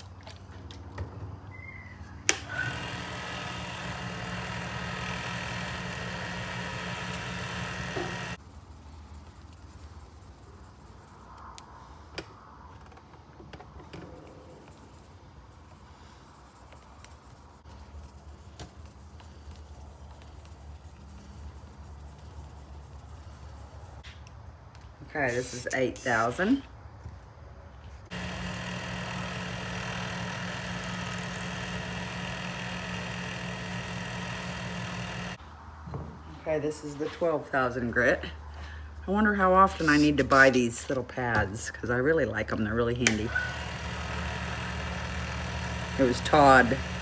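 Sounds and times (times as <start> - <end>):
lathe motor hum: 2.3 - 8.4, 28.1 - 35.4, 43.1 - 47.0
sanding pad on pen blank: 2.6 - 11.4, 14.2 - 24.0, 28.1 - 35.4, 39.7 - 40.7, 43.1 - 47.0.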